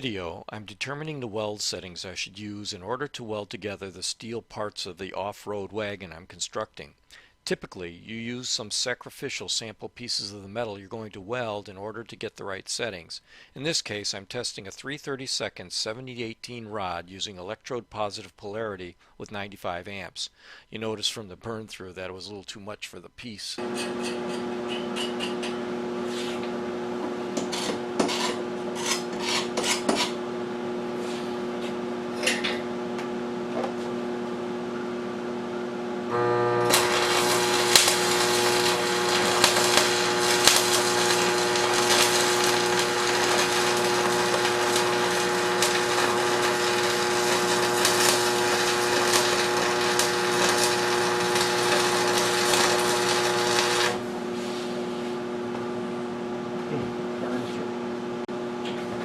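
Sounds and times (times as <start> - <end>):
welding arc crackling: 23.6 - 33.2, 35.8 - 54.2
steady hum: 25.4 - 58.6.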